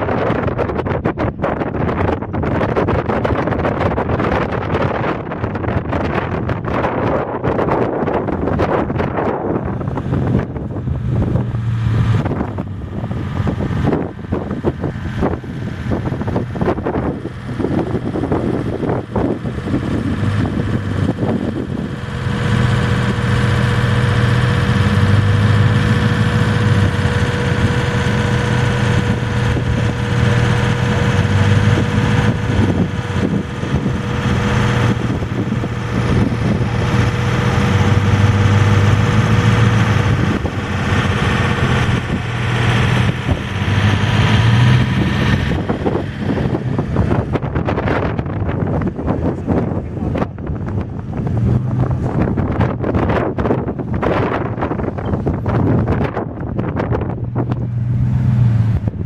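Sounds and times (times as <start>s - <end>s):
engine running: 0.0s - 59.0s
steady whine: 0.0s - 59.0s.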